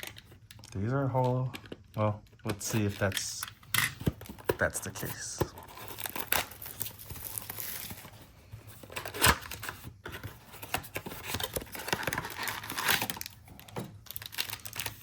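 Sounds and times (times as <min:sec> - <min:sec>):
cardboard rustling: 0:02.5 - 0:15.0
foil wrappers crinkling and tearing: 0:04.3 - 0:08.1, 0:10.6 - 0:15.0.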